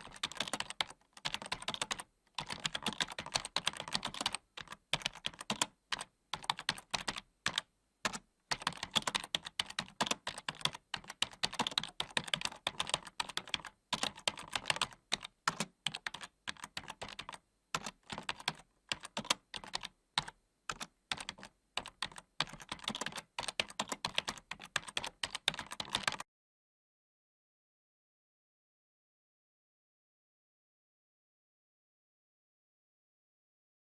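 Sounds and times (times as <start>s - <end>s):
fast keyboard typing: 0.0s - 26.2s.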